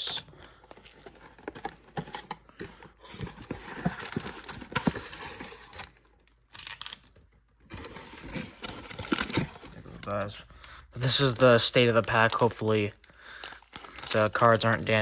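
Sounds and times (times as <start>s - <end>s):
cardboard rustling: 0.0s - 6.1s, 7.6s - 13.0s
wrappers crinkling: 8.8s - 15.0s.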